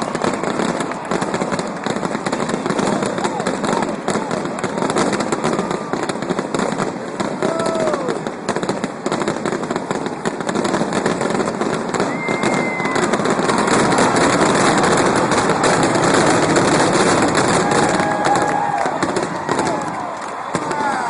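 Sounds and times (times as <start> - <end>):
fireworks bangs and crackling: 0.0 - 21.0.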